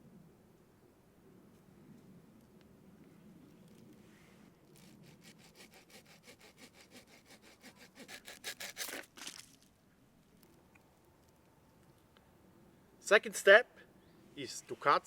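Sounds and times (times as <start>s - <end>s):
small saw cutting wood: 4.7s - 9.2s.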